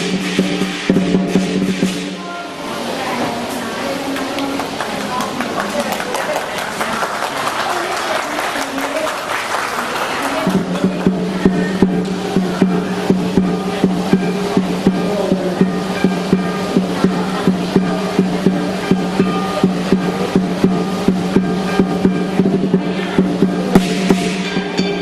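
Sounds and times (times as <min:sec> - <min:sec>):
large drum beating: 0:00.0 - 0:02.5, 0:10.3 - 0:25.0
cymbals crashing: 0:00.0 - 0:03.6, 0:09.9 - 0:25.0
low ringing tone: 0:11.3 - 0:25.0.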